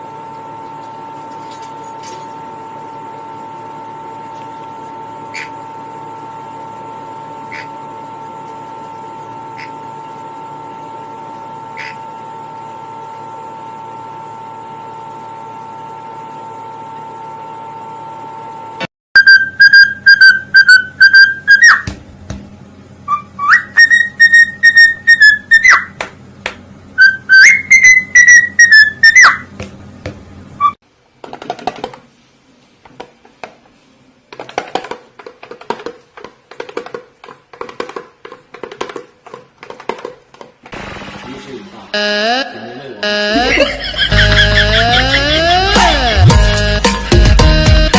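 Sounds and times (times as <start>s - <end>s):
parrot whistling: 19.2s - 21.9s, 23.1s - 26.0s, 27.0s - 29.5s, 44.2s - 46.3s
steady hum: 40.8s - 47.9s.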